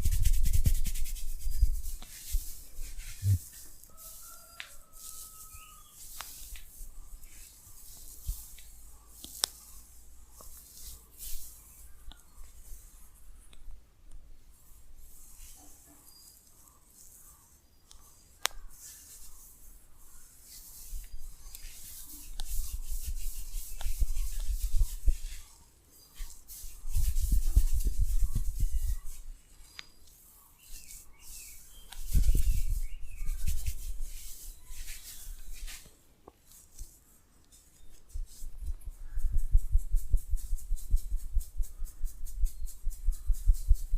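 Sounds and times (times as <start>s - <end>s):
hands rubbing skin and hair: 0.0s - 13.0s, 14.6s - 43.9s
faint bird chirps: 1.3s - 13.2s, 15.1s - 35.8s, 41.7s - 43.9s.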